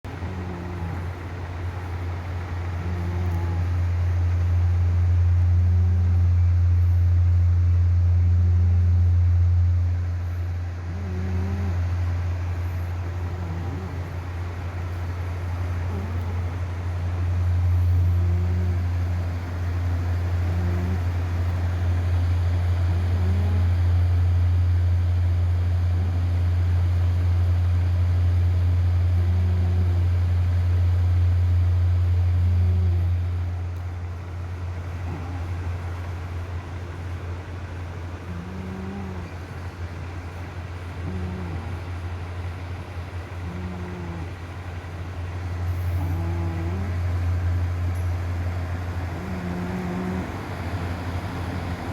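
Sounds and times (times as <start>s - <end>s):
steady low hum: 0.0s - 51.9s
cat snoring: 0.1s - 3.9s, 10.8s - 16.8s, 17.5s - 24.2s, 25.9s - 26.5s, 29.1s - 30.3s, 32.4s - 33.5s, 35.0s - 36.1s, 38.2s - 42.5s, 43.2s - 45.0s, 45.7s - 47.3s, 48.9s - 51.9s.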